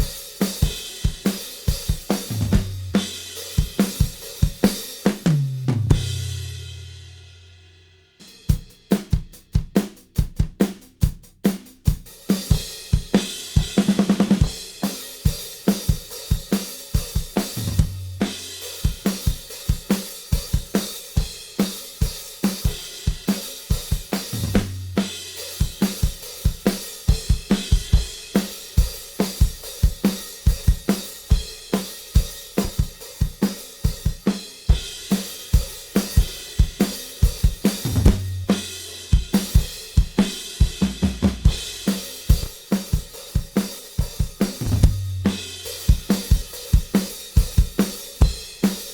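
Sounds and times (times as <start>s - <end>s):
drum kit playing pop-rock beat: 0.0s - 7.5s, 8.2s - 48.9s
tom fill: 37.6s - 42.5s.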